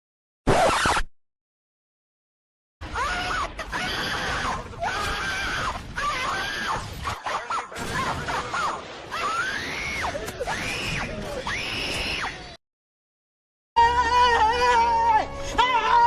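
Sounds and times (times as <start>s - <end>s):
high-pitched screaming: 9.1s - 12.4s.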